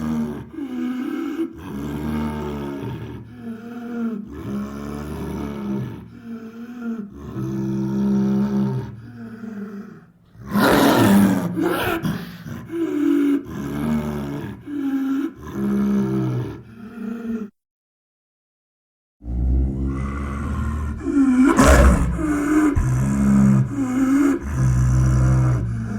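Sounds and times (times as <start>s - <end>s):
creature growls and moans: 6.8s - 17.5s, 19.2s - 25.9s
harsh creature roar: 10.4s - 14.5s, 19.2s - 25.9s.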